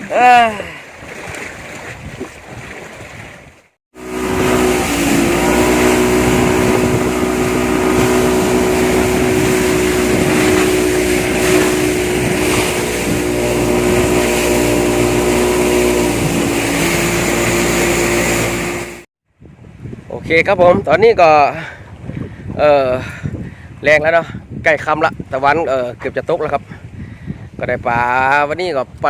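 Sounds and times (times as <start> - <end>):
boat engine running: 3.9 - 19.1.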